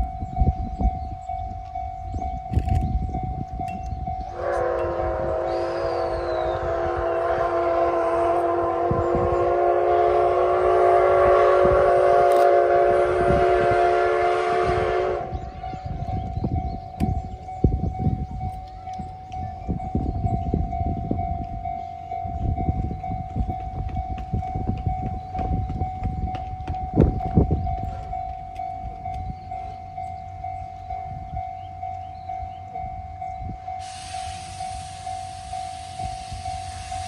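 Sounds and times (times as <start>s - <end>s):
level crossing warning bell: 0.0s - 9.8s, 15.4s - 37.0s
steam train rumble: 0.0s - 37.0s
loud hiss of steam: 33.8s - 37.0s.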